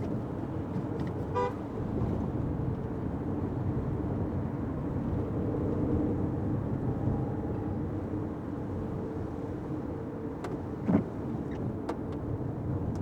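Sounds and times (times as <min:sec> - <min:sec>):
car engine and road noise: 0:00.0 - 0:13.0
car horn toot: 0:01.3 - 0:01.6.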